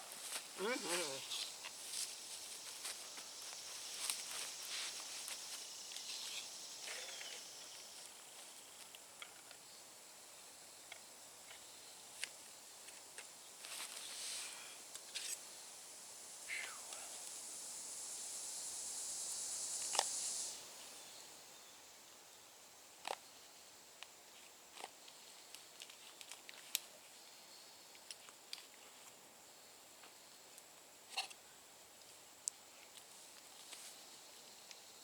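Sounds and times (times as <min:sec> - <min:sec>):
insects droning: 0:00.0 - 0:35.0.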